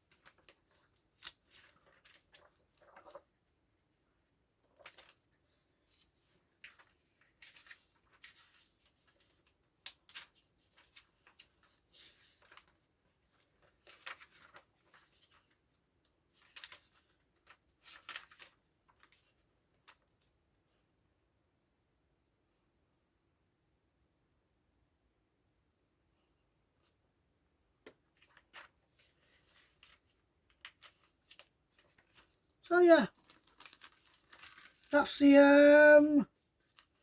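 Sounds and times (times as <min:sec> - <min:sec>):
comic books rustling: 0:00.0 - 0:20.8, 0:27.7 - 0:37.0.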